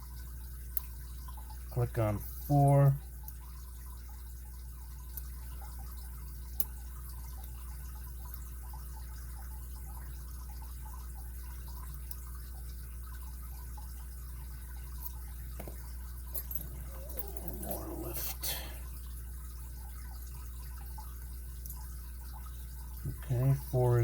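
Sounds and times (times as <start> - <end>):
low electrical hum: 0.0 - 24.0
lock pick ticking and scraping: 15.0 - 17.5.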